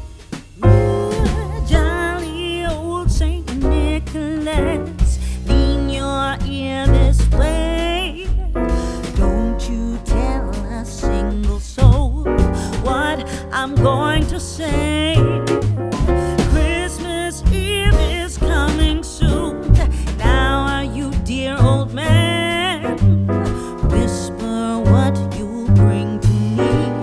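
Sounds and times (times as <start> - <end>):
song with piano and beat: 0.0 - 27.0.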